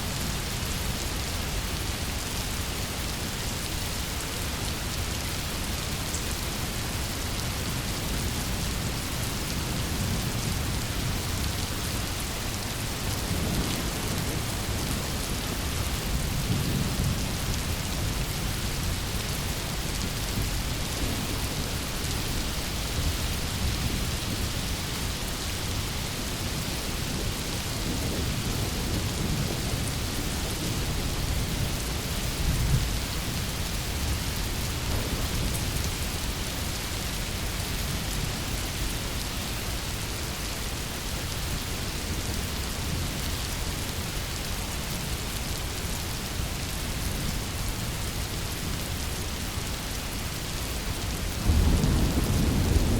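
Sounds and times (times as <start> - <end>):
heavy rain: 0.0 - 52.9
rolling thunder: 27.0 - 36.5, 51.3 - 52.9.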